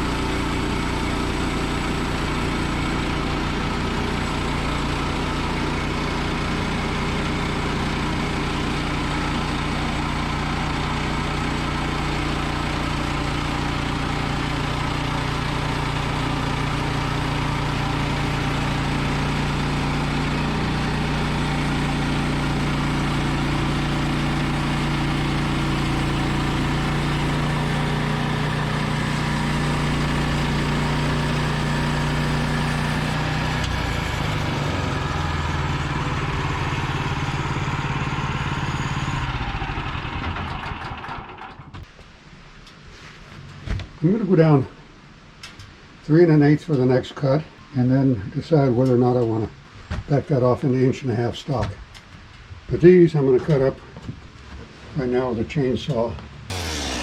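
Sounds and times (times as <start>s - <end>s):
band blade sawing log: 0.0s - 35.0s, 56.5s - 57.0s
gas engine running: 0.0s - 41.8s, 56.2s - 57.0s.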